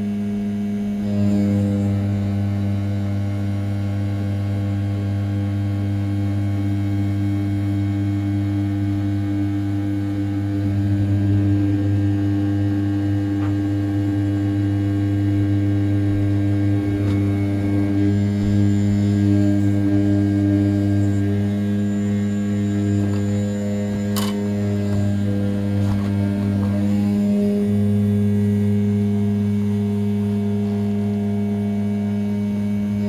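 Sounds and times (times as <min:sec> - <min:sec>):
milling spindle humming: 0:00.3 - 0:33.0.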